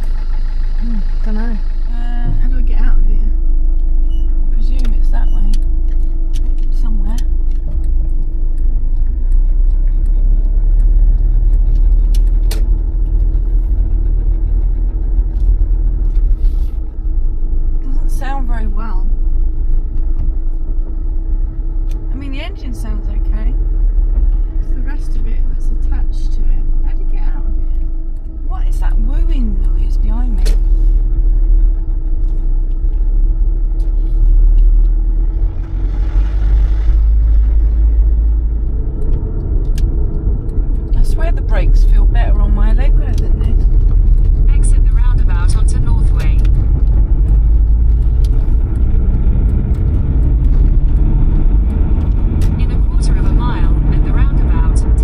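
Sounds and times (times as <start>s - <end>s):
car interior low rumble: 0.0s - 55.0s
steady whine: 0.0s - 55.0s.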